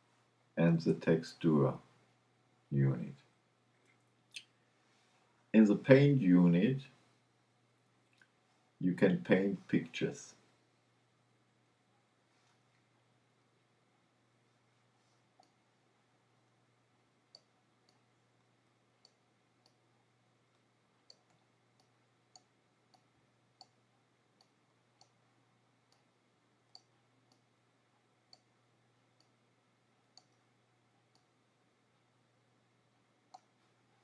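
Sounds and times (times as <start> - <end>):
low steady hum: 0.0 - 34.0
computer mouse clicks: 15.4 - 15.6, 17.3 - 18.1, 19.0 - 19.8, 20.5 - 23.8, 25.9 - 26.1, 26.7 - 27.5, 30.1 - 31.3.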